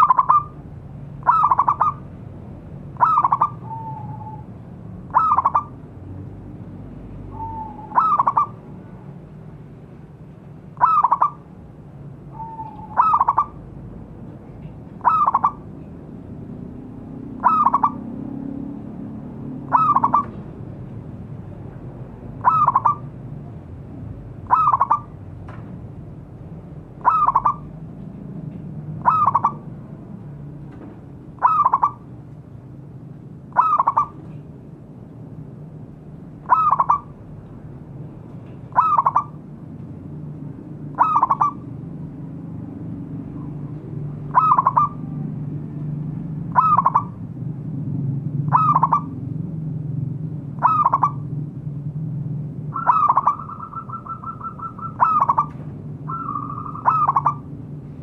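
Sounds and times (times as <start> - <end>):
dove cooing: 0.0 - 0.6, 1.2 - 2.1, 3.0 - 4.5, 5.1 - 5.8, 7.3 - 8.6, 10.8 - 11.4, 12.3 - 13.6, 15.0 - 15.7, 17.4 - 18.2, 19.6 - 20.5, 22.4 - 23.1, 24.4 - 25.2, 27.0 - 27.7, 29.0 - 29.7, 31.4 - 32.0, 33.5 - 34.2, 36.4 - 37.2, 38.7 - 39.4, 41.0 - 41.7, 43.4 - 45.2, 46.5 - 47.2, 48.5 - 49.2, 50.6 - 51.3, 52.7 - 57.5
low background hum: 0.0 - 58.0.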